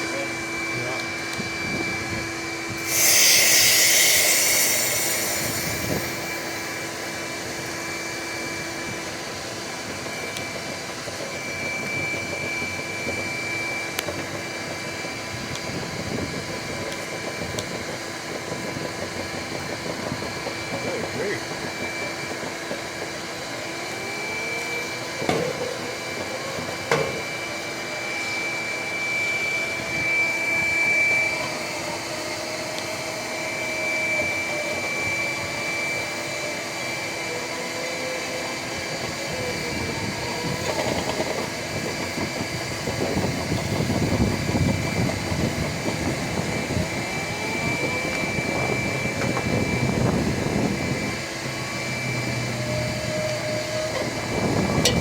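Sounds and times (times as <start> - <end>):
vacuum motor running: 0.0 - 55.0.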